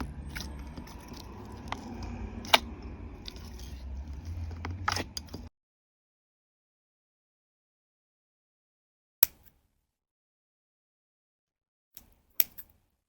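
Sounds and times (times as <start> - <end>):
low rumble: 0.0 - 5.5.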